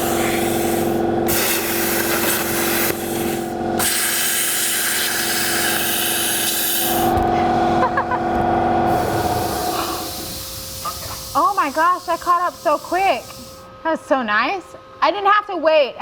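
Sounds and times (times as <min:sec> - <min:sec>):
pneumatic tool air hiss: 0:00.0 - 0:07.2, 0:08.9 - 0:13.7.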